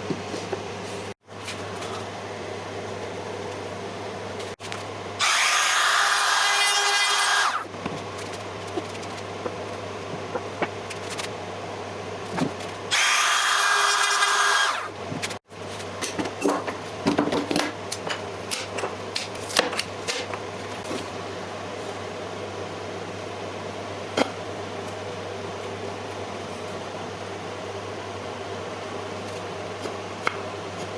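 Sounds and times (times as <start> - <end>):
power tool cutting wood: 5.2 - 7.7, 12.9 - 14.9.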